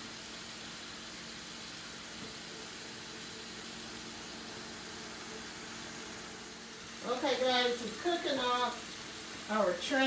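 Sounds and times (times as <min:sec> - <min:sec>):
pot cooking with low hiss: 0:00.0 - 0:10.0.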